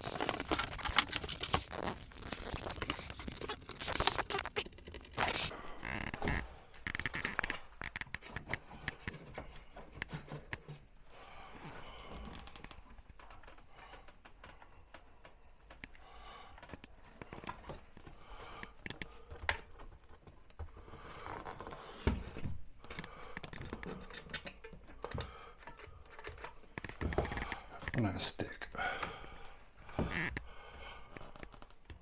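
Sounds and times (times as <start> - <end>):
hands handling cardboard and tape: 0.0 - 5.5.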